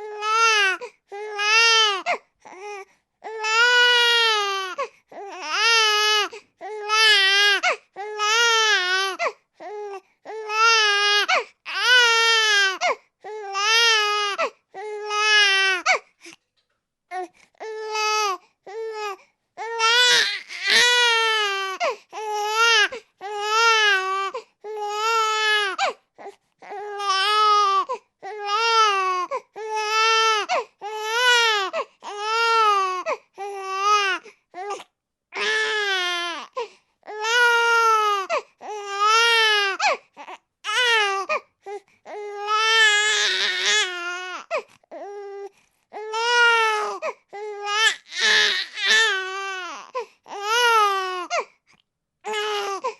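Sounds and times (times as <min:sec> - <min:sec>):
baby crying hard: 0:03.3 - 0:09.3, 0:10.4 - 0:12.9, 0:17.8 - 0:25.9, 0:35.4 - 0:41.4, 0:42.1 - 0:44.6, 0:46.0 - 0:51.4, 0:52.3 - 0:52.9.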